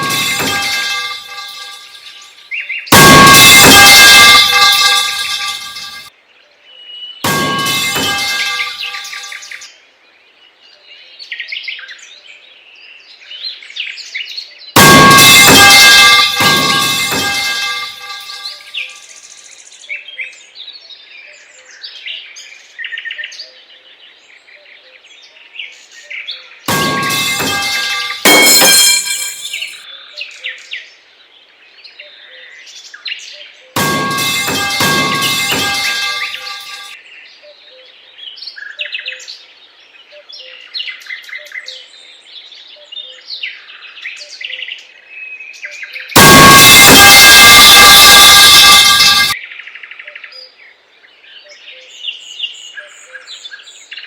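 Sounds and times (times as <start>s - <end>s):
metal pipe clanging: 0.0s - 1.9s, 14.8s - 18.6s, 26.7s - 29.8s, 33.8s - 37.0s
loud ringing sound: 0.0s - 2.2s, 2.9s - 6.1s, 14.8s - 18.7s, 26.7s - 29.8s, 33.8s - 37.0s, 46.2s - 49.4s
songbirds singing: 6.2s - 7.3s, 8.8s - 14.8s, 18.4s - 26.7s, 37.0s - 46.2s, 49.4s - 54.0s.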